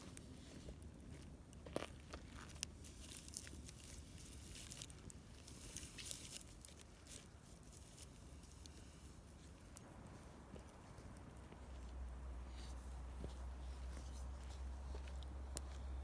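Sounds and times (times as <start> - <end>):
campfire crackling and popping: 0.0 - 12.3.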